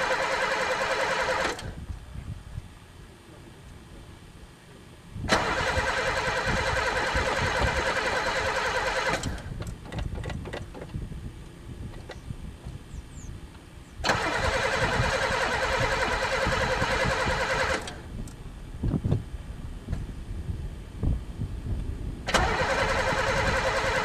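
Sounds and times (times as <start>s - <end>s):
engine cranking on starter: 0.0s - 1.8s, 5.3s - 10.9s, 14.0s - 18.4s, 22.3s - 24.0s.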